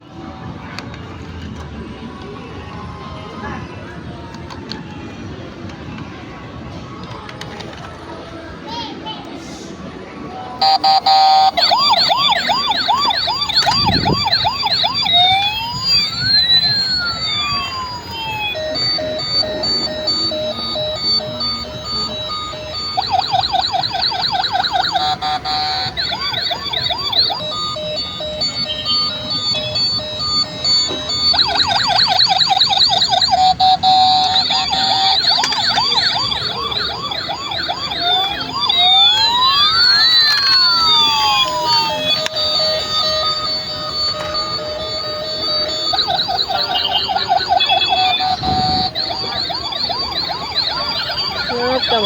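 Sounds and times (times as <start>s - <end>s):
electronic toy siren: 10.6s - 52.0s
short beeping tune: 10.6s - 52.0s.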